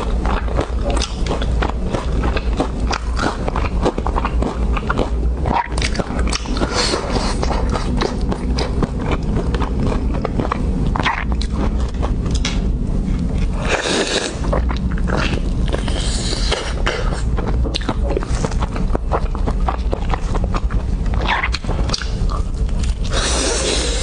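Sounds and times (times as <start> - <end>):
dog crunching food: 0.0 - 12.6
low hum: 0.0 - 24.0.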